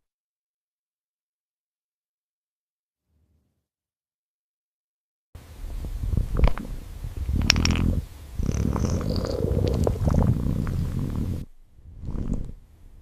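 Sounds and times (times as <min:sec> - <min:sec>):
cat purring: 0:07.2 - 0:12.6.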